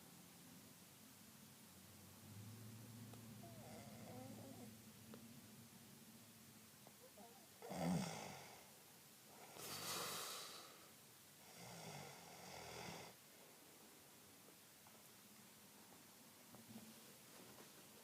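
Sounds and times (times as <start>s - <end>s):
person snoring: 3.4s - 4.7s, 7.6s - 8.7s, 9.4s - 10.9s
hissing breath: 9.4s - 11.0s.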